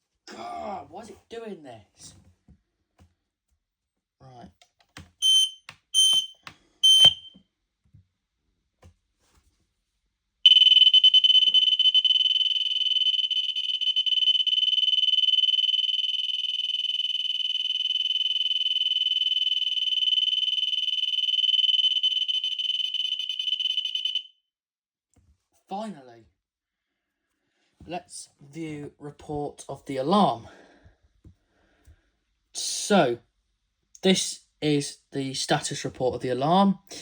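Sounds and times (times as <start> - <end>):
alarm short high beeps: 5.2 - 7.3, 10.5 - 24.2
long high fluttering tone: 10.5 - 24.2.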